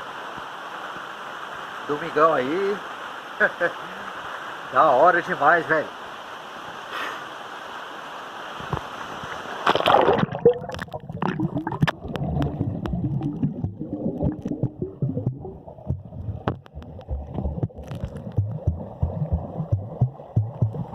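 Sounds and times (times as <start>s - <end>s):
splash into water: 9.6s - 12.6s
underwater clicks: 9.7s - 20.9s
underwater gurgling and bubbling: 9.7s - 20.9s.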